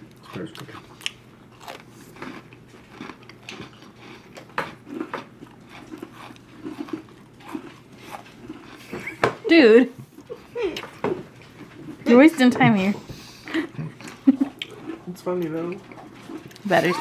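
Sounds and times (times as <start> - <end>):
person crunching a cookie: 0.0 - 8.9
mouth sounds: 16.6 - 17.0.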